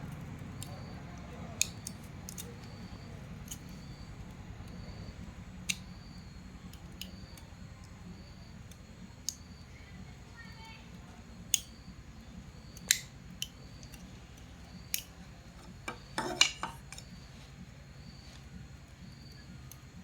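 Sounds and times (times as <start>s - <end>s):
sharp clicks and snips: 0.1s - 4.0s, 4.6s - 8.0s, 8.7s - 9.5s, 11.4s - 11.8s, 12.7s - 15.8s.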